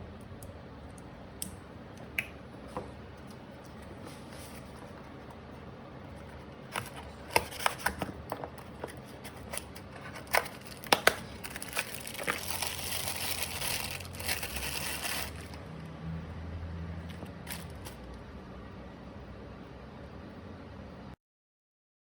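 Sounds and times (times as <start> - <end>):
crinkling rustle: 8.6 - 15.6, 17.1 - 18.1.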